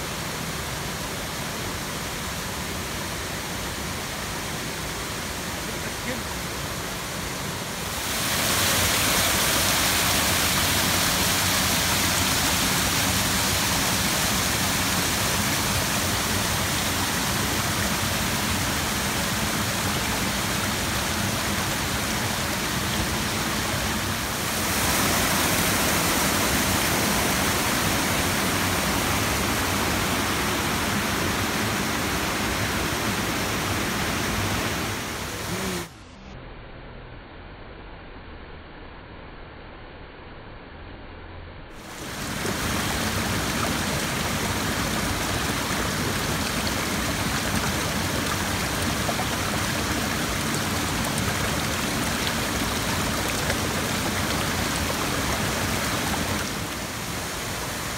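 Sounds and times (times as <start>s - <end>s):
waterfall pouring: 7.8s - 35.9s, 41.8s - 57.9s.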